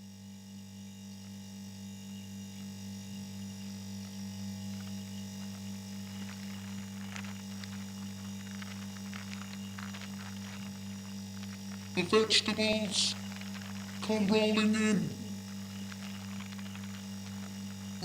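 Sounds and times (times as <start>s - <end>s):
refrigerator electrical hum: 0.0s - 18.0s
faint crackling clicks: 4.0s - 18.0s.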